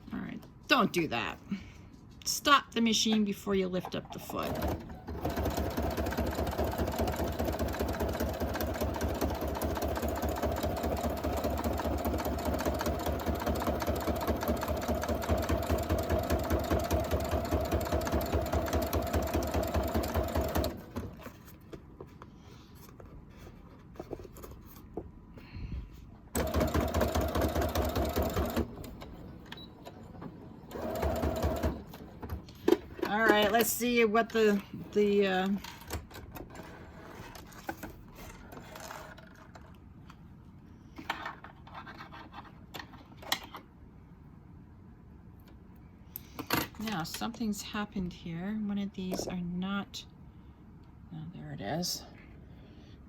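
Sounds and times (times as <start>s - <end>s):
sewing machine stitching: 4.4s - 21.2s, 26.4s - 29.1s, 30.7s - 32.2s.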